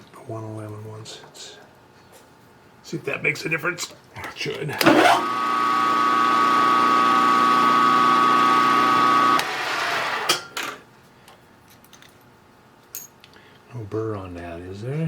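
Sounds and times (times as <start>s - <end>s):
milling machine spindle whine: 4.8s - 10.3s.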